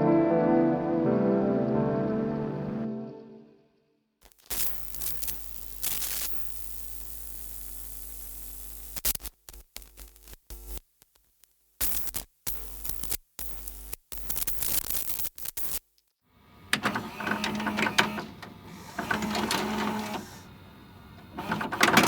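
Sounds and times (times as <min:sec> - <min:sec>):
static noise: 0:04.5 - 0:15.8, 0:16.6 - 0:22.0.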